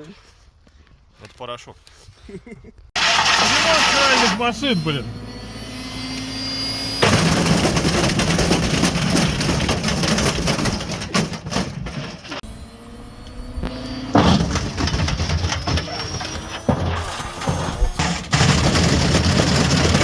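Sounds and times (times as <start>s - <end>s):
washing machine motor whine: 3.0s - 7.6s, 12.4s - 18.9s
brick banging in washing machine: 7.0s - 12.4s, 14.2s - 20.0s.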